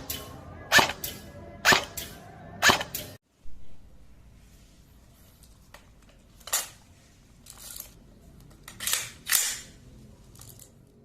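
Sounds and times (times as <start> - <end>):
airsoft rifle shots: 0.0 - 3.2.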